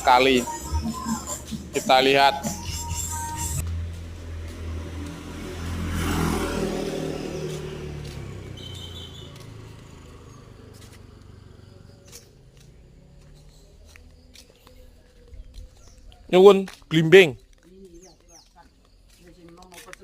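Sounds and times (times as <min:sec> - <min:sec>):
vehicle passing by: 0:03.0 - 0:16.0.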